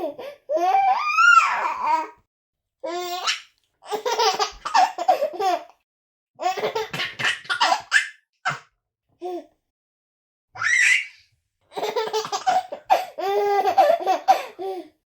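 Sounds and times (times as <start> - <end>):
baby laughing: 2.9 - 5.8, 6.4 - 8.6, 11.7 - 14.8.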